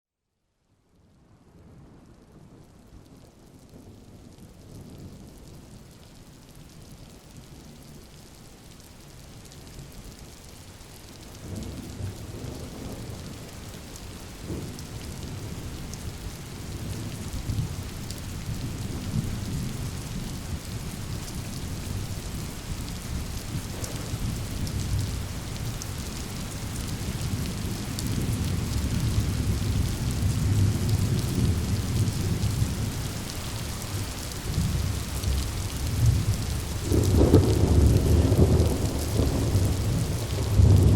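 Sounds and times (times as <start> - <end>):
steady rain: 0.6 - 40.9
rolling thunder: 23.3 - 25.2, 34.0 - 40.9.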